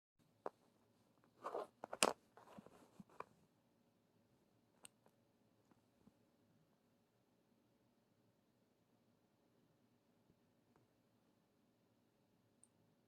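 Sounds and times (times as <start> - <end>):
smartphone handling rustle: 1.3 - 3.4.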